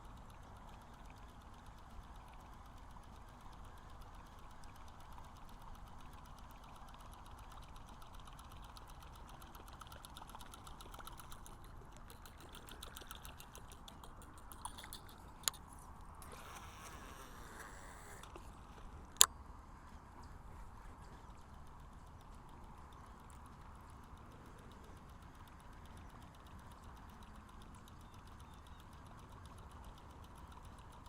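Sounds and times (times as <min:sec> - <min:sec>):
fishing reel gears ticking: 0:00.0 - 0:19.3, 0:21.2 - 0:31.0
sharp clicks: 0:00.1 - 0:19.4.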